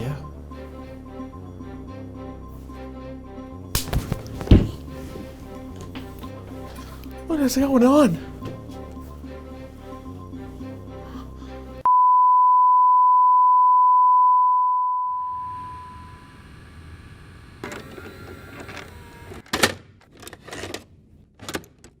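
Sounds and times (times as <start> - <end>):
low rustling: 3.8 - 7.3.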